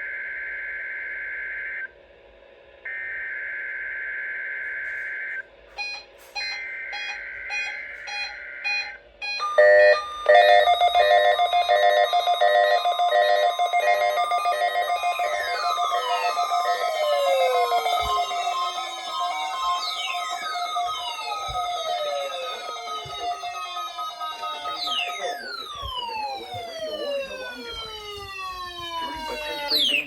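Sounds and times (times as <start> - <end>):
two-tone digital data bursts: 5.8 - 27.6
pulsing electronic alert tones: 5.8 - 30.0.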